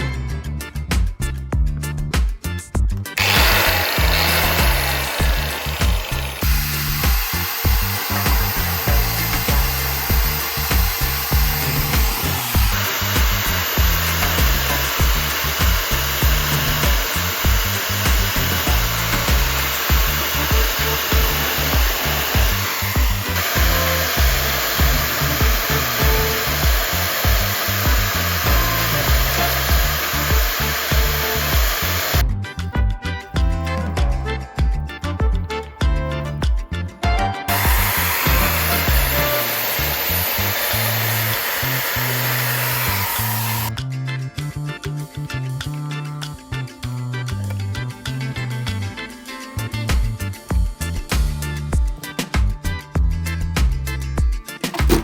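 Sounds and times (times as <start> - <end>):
background music with steady beat: 0.0 - 55.0
angle grinder running: 3.2 - 32.2, 37.5 - 43.7.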